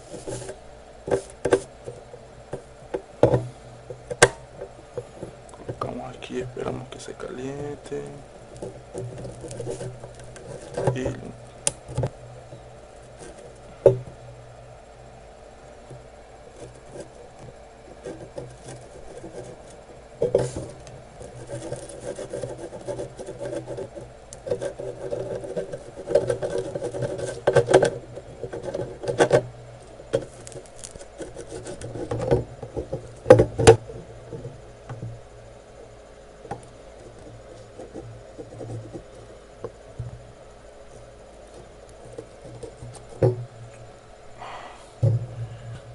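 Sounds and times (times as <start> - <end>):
braid scraping on circuit board: 0.0 - 2.6, 5.8 - 12.1, 13.0 - 13.7, 16.4 - 29.5, 30.1 - 33.8, 37.0 - 39.4
steady low hum: 0.0 - 45.9.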